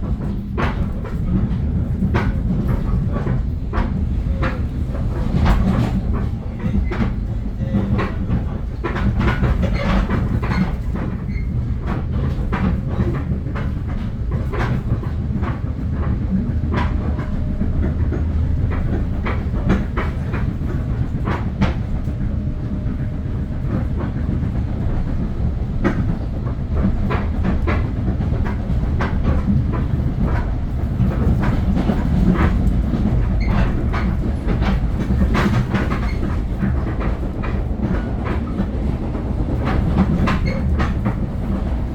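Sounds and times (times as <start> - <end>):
train rumbling: 0.0 - 41.9
wheels clacking over rails: 24.3 - 41.9.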